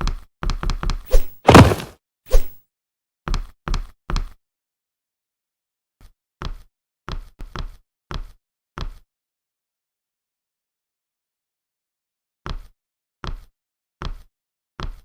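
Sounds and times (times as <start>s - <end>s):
dry knocking hits: 1.5s - 1.9s.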